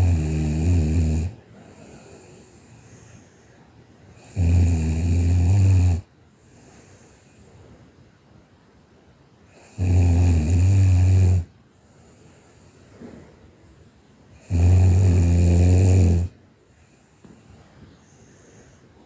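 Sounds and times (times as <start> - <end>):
person snoring: 0.0 - 3.3, 4.1 - 7.2, 9.5 - 11.5, 14.4 - 16.4.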